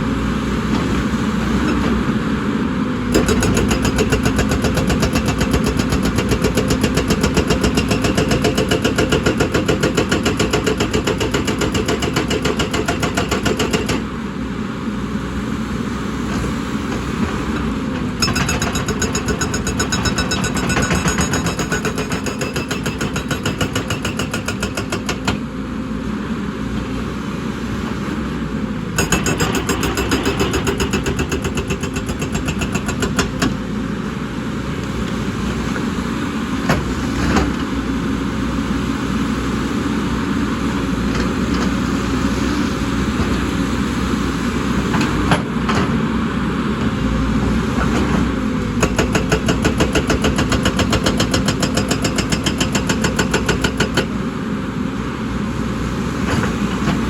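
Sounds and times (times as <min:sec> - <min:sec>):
diesel engine running under load: 0:25.2 - 0:51.7.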